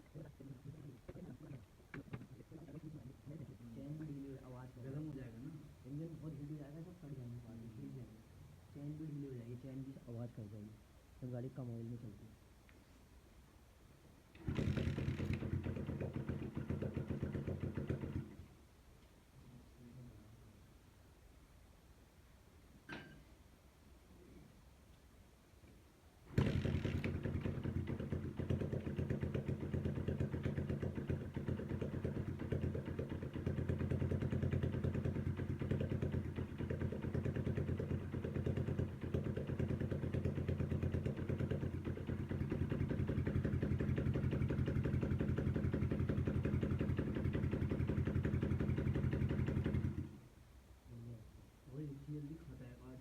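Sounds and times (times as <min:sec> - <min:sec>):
motorcycle engine idling: 0:14.4 - 0:18.5, 0:26.3 - 0:50.2.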